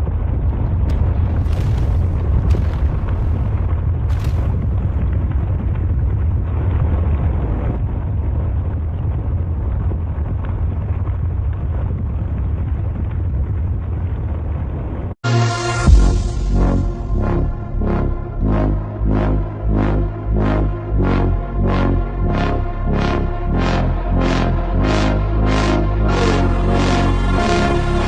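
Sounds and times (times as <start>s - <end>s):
volcanic eruption rumble and roar: 0.0s - 15.2s
sharp cracks: 0.9s - 5.1s.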